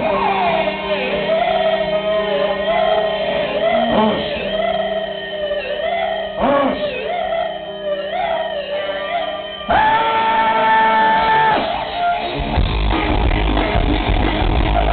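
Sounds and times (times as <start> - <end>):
person singing: 0.0 - 12.2
electric guitar: 0.0 - 14.9
live rock band: 9.5 - 14.9.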